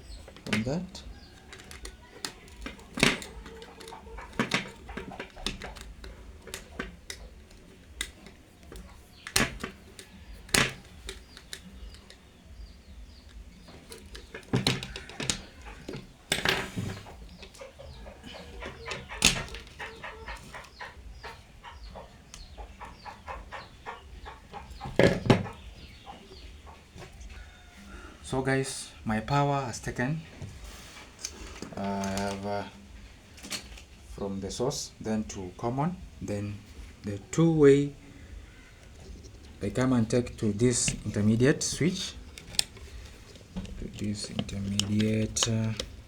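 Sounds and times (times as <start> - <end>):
cable and switch fittings clicking: 0.0 - 20.6, 31.2 - 32.6, 38.8 - 46.0
chickens clucking: 0.0 - 46.0.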